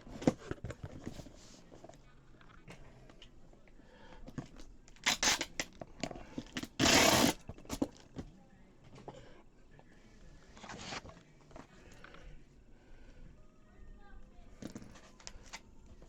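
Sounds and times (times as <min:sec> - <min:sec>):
cardboard boxes rustling and knocking: 0:00.0 - 0:01.8
cardboard tearing: 0:05.0 - 0:05.7, 0:06.6 - 0:07.9.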